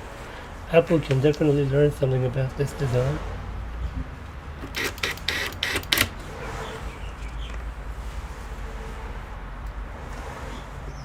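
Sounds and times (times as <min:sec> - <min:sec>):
parts clicking and knocking: 0:04.6 - 0:06.4.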